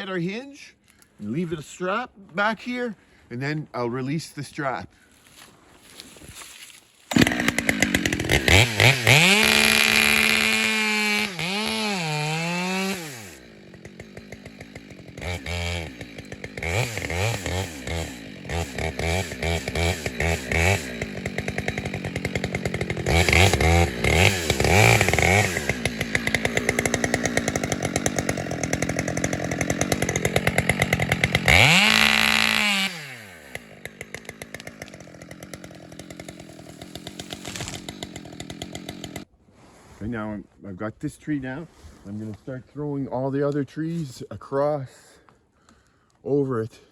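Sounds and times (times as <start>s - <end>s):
chainsaw cutting tree trunk: 7.1s - 39.3s.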